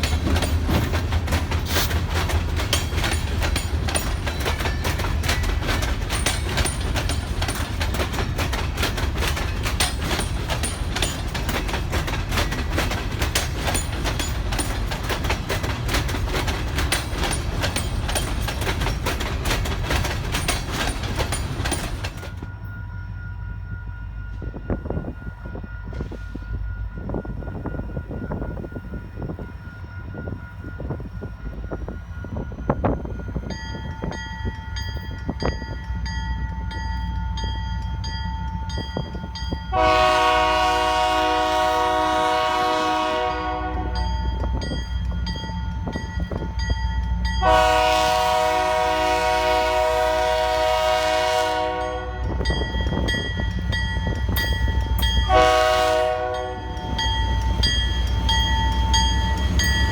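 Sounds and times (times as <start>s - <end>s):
locomotive air horn blasts: 39.7s - 44.1s, 47.4s - 52.4s, 55.2s - 57.0s
bell ringing steadily: 56.3s - 59.9s.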